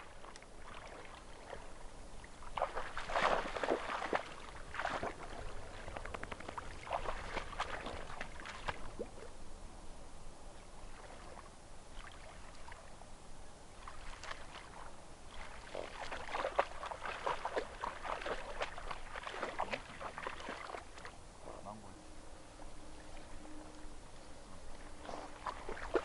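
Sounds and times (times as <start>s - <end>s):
splashing in stream water: 0.0s - 9.3s, 13.8s - 21.2s, 24.7s - 26.0s.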